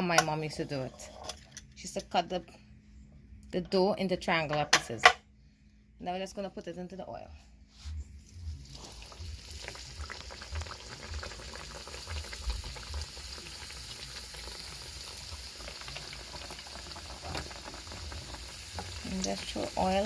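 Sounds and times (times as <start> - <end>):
dough sizzling in hot oil: 8.3 - 20.0.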